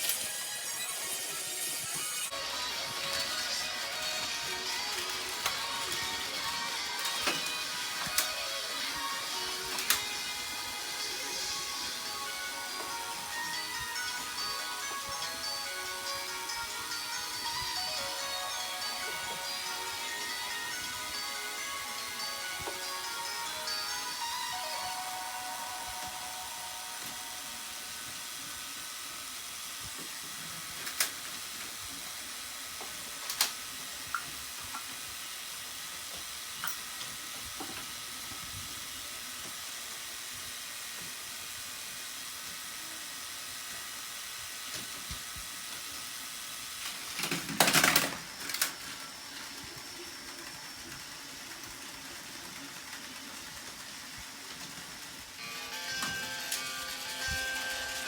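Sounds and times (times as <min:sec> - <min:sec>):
toy train motors whirring: 0:00.0 - 0:58.0
toy trains colliding with clatter: 0:02.7 - 0:08.4, 0:09.7 - 0:10.2, 0:30.7 - 0:31.8, 0:33.1 - 0:33.8, 0:46.6 - 0:58.0.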